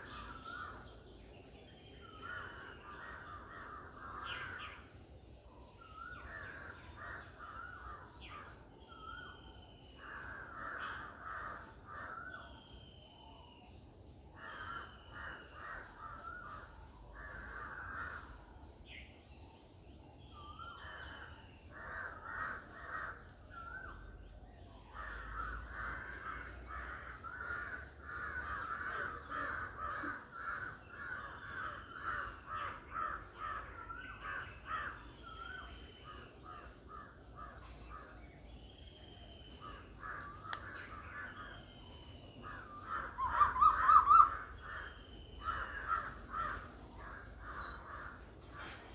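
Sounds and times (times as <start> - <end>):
harsh chattering bird calls: 42.4 - 46.6.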